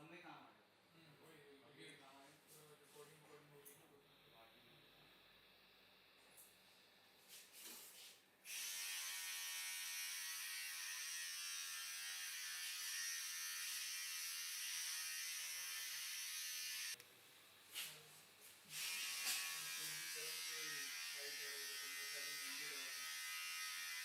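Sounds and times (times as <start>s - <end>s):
small electric motor buzzing: 8.4s - 17.0s, 18.7s - 24.0s.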